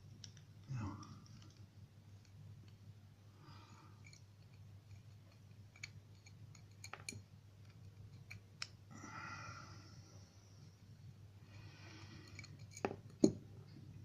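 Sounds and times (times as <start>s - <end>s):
small metallic clicks and taps: 0.0s - 0.6s, 4.0s - 8.8s
faint low hum: 0.0s - 14.0s.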